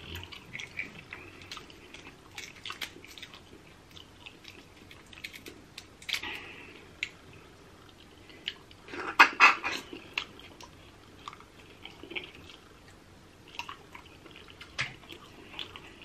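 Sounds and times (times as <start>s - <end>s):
wet chewing and smacking: 0.0s - 8.9s, 9.7s - 16.0s
crab shell crackling: 0.4s - 7.2s.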